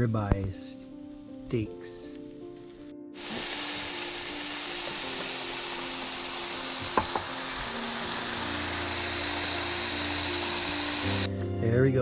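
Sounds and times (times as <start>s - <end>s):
steaks sizzling over fire: 2.2s - 11.3s.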